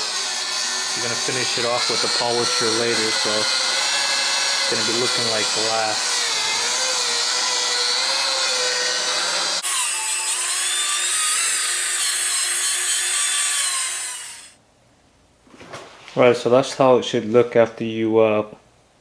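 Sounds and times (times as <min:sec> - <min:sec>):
rotary buffer motor whine: 0:09.4 - 0:14.6.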